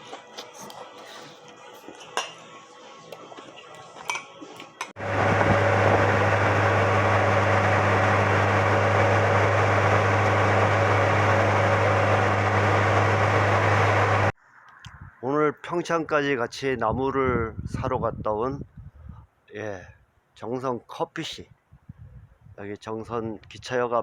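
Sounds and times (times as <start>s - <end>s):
cutlery clinking on dishes: 1.9s - 2.4s, 3.7s - 4.9s
loud steady rushing noise: 5.0s - 14.3s
low hum: 5.0s - 14.4s.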